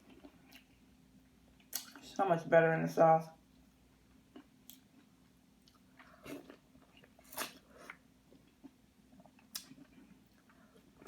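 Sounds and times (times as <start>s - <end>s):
person chewing corn: 0.0s - 0.9s, 4.2s - 11.0s.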